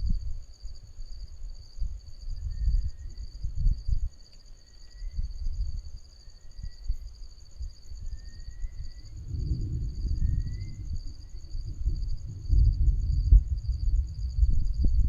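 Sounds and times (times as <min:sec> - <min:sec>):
insects trilling: 0:00.5 - 0:14.9
low rumble: 0:08.4 - 0:15.0.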